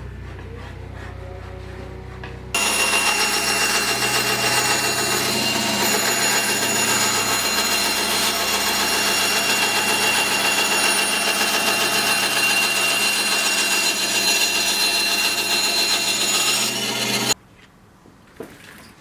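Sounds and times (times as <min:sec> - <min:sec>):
electric power tool whining: 0:02.6 - 0:17.4.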